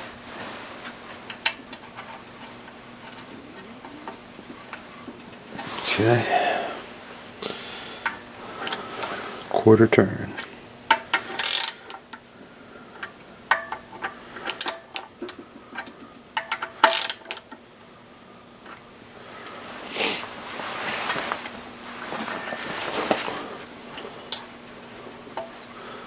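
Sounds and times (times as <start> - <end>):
wrench ratcheting: 11.1 - 11.9, 16.4 - 17.4.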